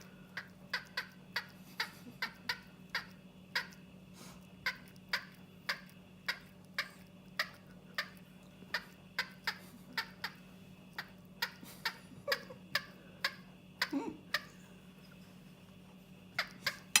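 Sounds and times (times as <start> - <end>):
cooked chicken clicking and popping: 0.0 - 11.7, 16.6 - 17.0.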